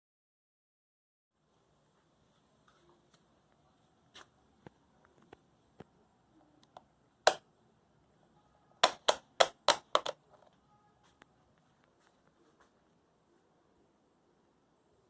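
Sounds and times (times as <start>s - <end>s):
sharp clicks: 6.6s - 7.4s, 8.8s - 10.2s.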